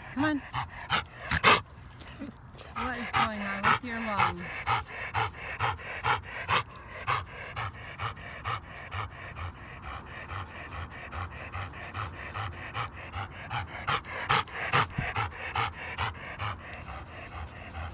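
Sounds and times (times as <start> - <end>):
dog breathing fast and hard: 0.0 - 17.9.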